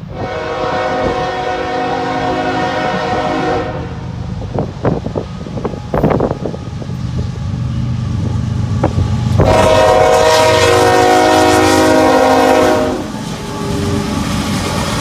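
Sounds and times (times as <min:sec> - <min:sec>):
locomotive engine rumble: 0:00.0 - 0:15.0
locomotive air horn chord: 0:00.1 - 0:04.1, 0:09.4 - 0:13.8.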